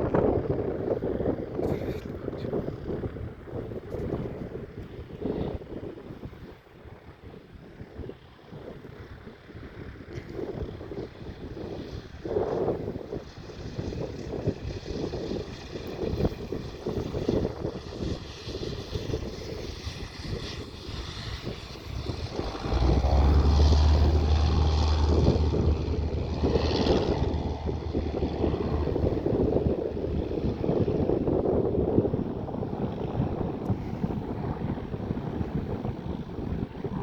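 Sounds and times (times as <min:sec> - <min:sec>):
propeller plane engine: 0:00.0 - 0:37.0
wind buffeting microphone: 0:00.0 - 0:37.0
deep rumble: 0:12.7 - 0:37.0.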